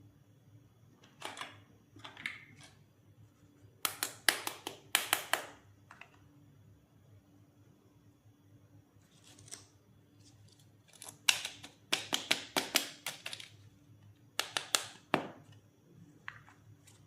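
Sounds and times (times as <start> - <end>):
toy pieces clicking and tapping: 11.0 - 13.6, 14.4 - 15.2.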